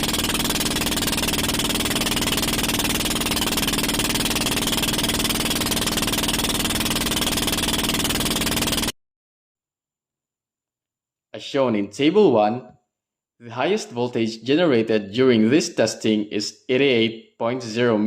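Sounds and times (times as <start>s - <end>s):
boat engine clattering: 0.0s - 8.9s.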